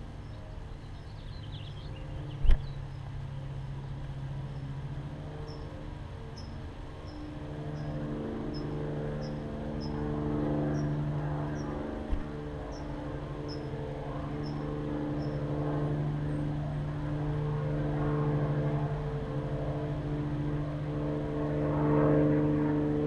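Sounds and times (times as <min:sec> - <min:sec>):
steady low hum: 0:00.0 - 0:23.0
nestling birds peeping: 0:00.2 - 0:03.2
bird twittering: 0:00.9 - 0:02.8.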